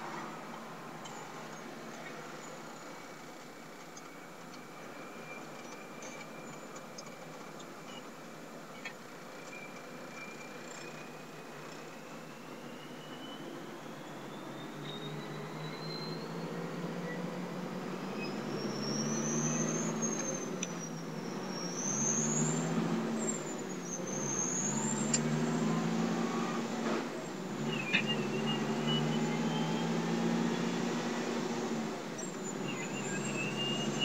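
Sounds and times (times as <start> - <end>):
turbo whistle: 32.4 - 34.0.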